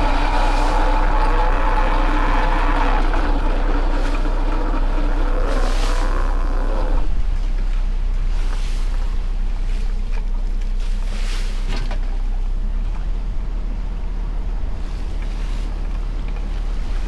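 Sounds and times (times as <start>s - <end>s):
wind on microphone: 0.0s - 10.1s
boat engine humming: 0.0s - 17.0s
water rushing against hull: 0.0s - 17.0s.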